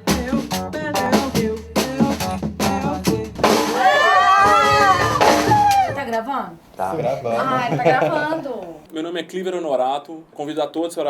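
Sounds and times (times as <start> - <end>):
bass line: 0.0 - 3.7
drum kit: 0.0 - 6.1.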